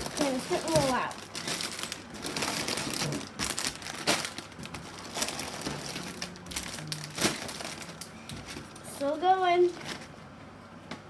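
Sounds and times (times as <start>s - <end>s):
plastic bags crinkling: 0.0s - 10.1s.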